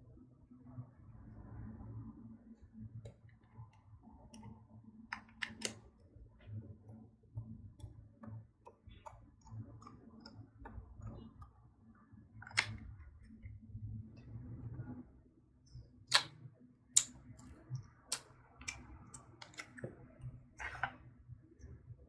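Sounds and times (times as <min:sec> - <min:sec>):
slime clicking and popping: 0:16.1 - 0:16.4.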